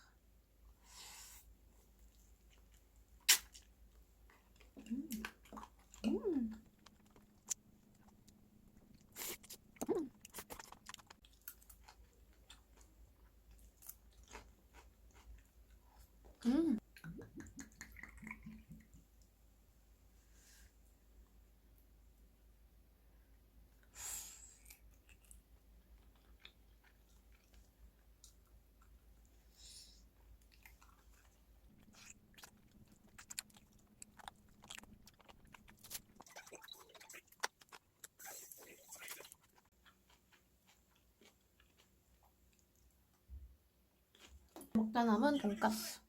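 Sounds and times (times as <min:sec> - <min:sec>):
person chewing and crunching: 0:02.4 - 0:16.1, 0:24.6 - 0:29.3, 0:30.2 - 0:42.9.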